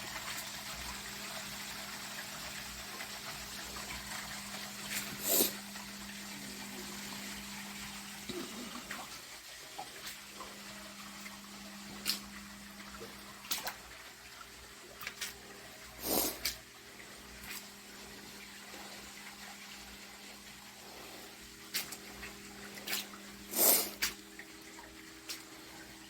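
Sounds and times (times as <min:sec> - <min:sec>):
water running and splashing: 0:00.0 - 0:26.0.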